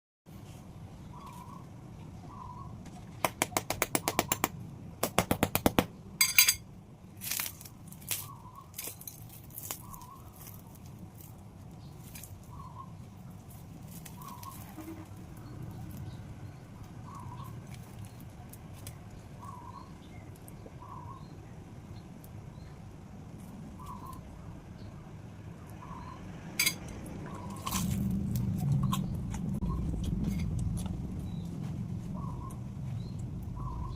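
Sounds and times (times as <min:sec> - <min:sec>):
low steady hum: 0:00.3 - 0:33.9
bread crust crackling: 0:07.1 - 0:16.1, 0:16.8 - 0:19.6.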